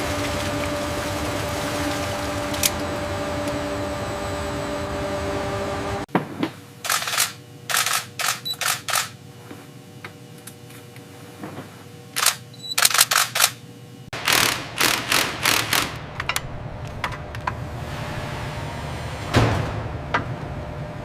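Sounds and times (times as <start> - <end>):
mechanical hum: 0.0 - 21.0
sharp mechanical clicks: 6.8 - 9.2, 12.2 - 13.6, 14.2 - 16.5.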